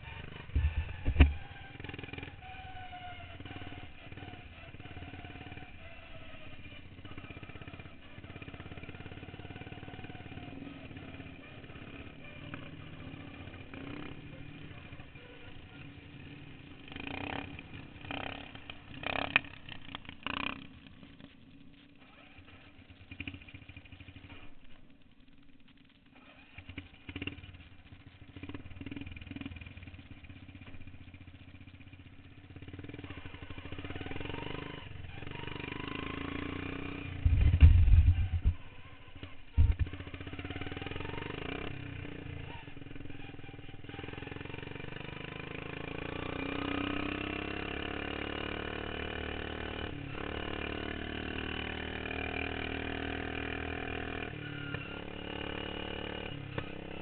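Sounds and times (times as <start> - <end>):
lawn mower engines revving: 0.0 - 57.0
loud low thumps: 37.2 - 38.6.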